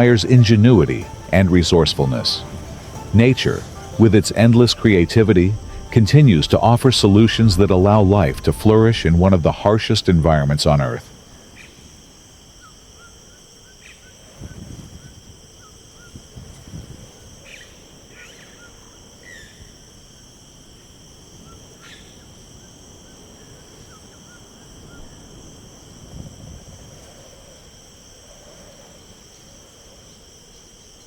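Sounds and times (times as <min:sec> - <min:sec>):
bird chirps: 0:00.0 - 0:09.2
low rumbles: 0:00.0 - 0:11.1
insects trilling: 0:00.0 - 0:31.0.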